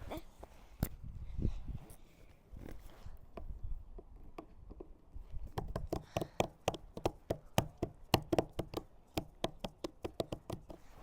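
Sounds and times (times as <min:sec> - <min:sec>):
hands drumming on deck: 0:05.6 - 0:10.8.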